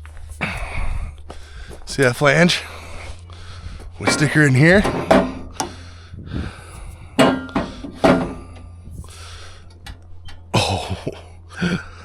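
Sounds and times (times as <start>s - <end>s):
metal tool clanking on steel: 4.0s - 6.0s, 6.9s - 10.5s.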